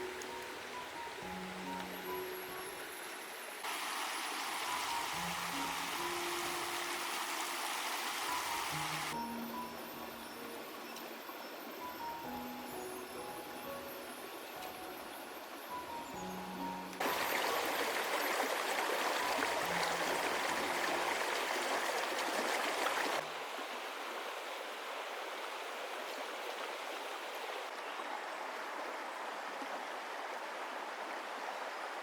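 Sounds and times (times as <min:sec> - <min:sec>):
water splashing over rocks: 0:17.0 - 0:23.2.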